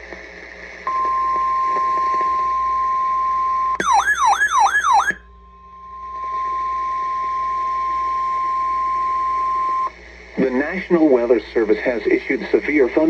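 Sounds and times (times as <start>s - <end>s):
siren-like wail: 3.8s - 5.2s
steady alert tone: 3.8s - 5.2s.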